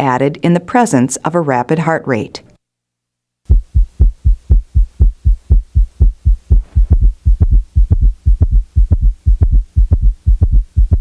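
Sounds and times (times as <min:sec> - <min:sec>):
rapid galloping heartbeat: 0:03.5 - 0:11.0.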